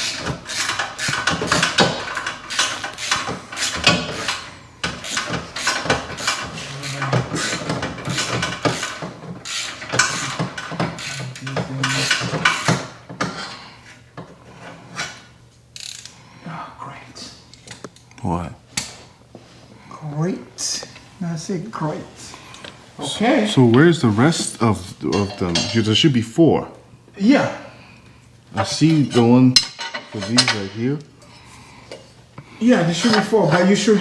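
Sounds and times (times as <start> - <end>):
hand tools clattering and scraping: 0.0 - 15.4, 23.5 - 26.2, 28.5 - 34.0.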